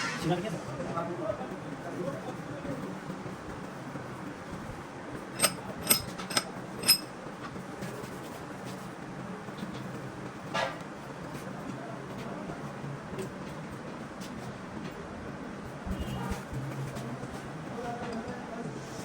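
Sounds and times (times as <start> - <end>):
steady low hum: 0.6 - 19.0
sharp metallic clinks: 5.4 - 7.1.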